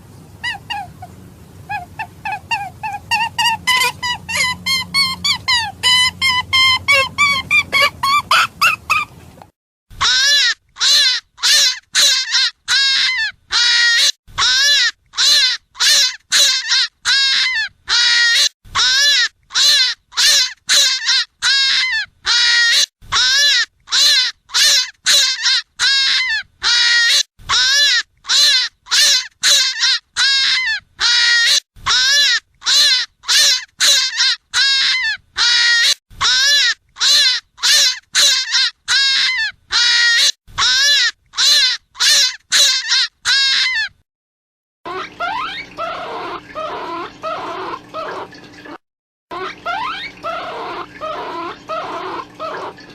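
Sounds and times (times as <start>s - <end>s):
rabbit hunting call cries: 0.4s - 9.1s.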